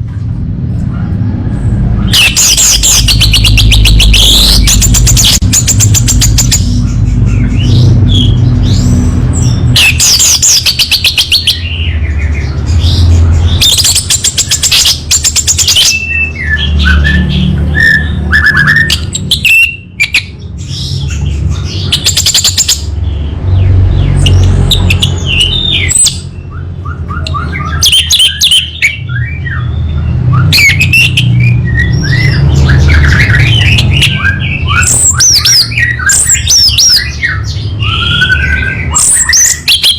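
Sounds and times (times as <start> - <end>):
low steady rumble: 0.0 - 19.1
bird singing trills and whistles: 2.0 - 39.9.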